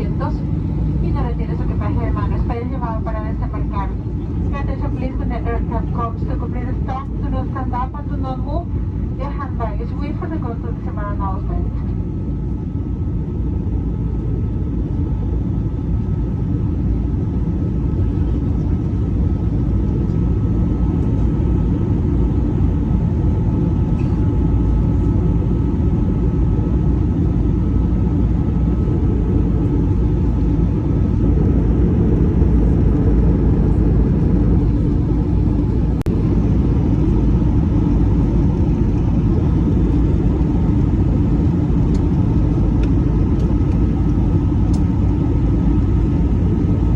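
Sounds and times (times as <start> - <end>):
faint steady hum: 0.0 - 46.9
jet engine cabin rumble: 0.0 - 46.9.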